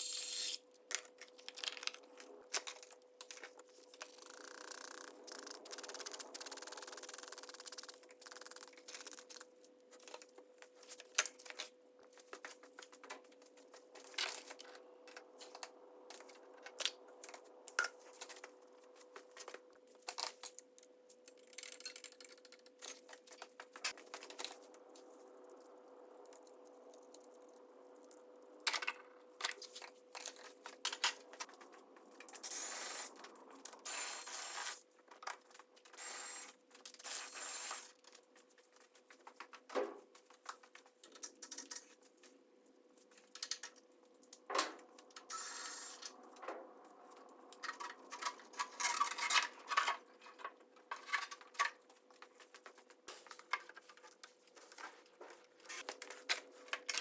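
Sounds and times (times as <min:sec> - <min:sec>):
faint steady hum: 0:22.8 - 0:35.0.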